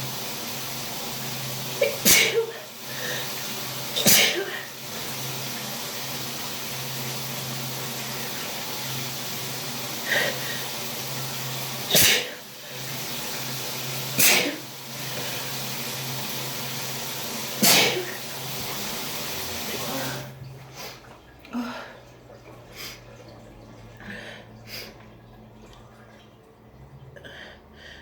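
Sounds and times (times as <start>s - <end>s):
shower water running: 0.0s - 28.0s
person sneezing: 1.8s - 2.7s, 4.0s - 4.7s, 11.9s - 12.4s, 14.2s - 14.6s, 17.6s - 18.2s.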